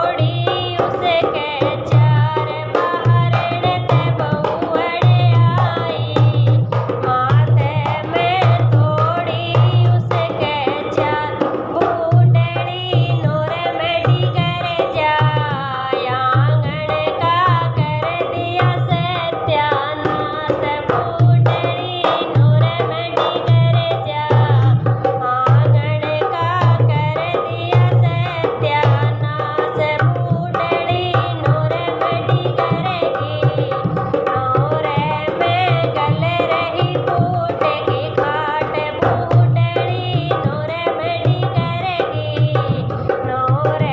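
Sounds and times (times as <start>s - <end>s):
hand drum beat: 0.0s - 43.9s.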